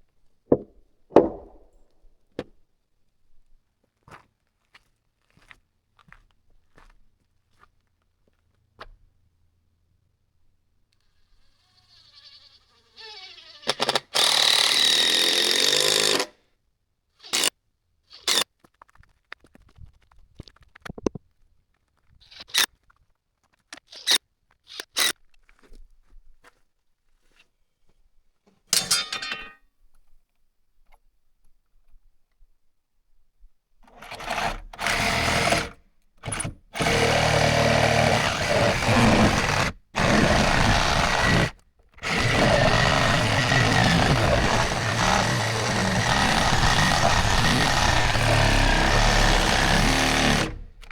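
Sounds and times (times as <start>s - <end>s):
sharp knocks and clicks: 0.5s - 1.8s.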